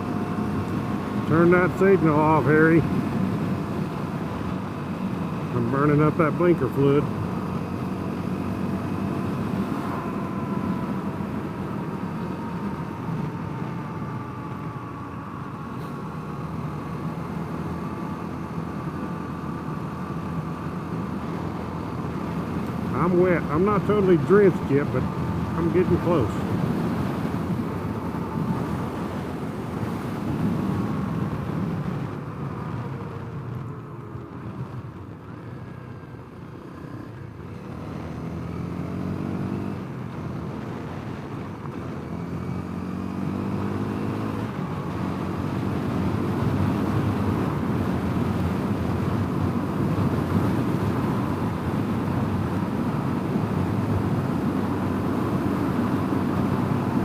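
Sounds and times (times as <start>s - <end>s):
motorcycle engine revving: 0.0s - 35.7s, 36.4s - 57.0s
wind rushing over microphone: 20.7s - 33.6s.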